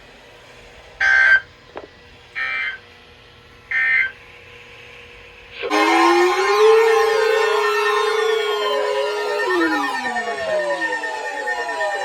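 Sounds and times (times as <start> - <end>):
faint steady hum: 0.0 - 12.0
warbling data tones: 5.6 - 12.0.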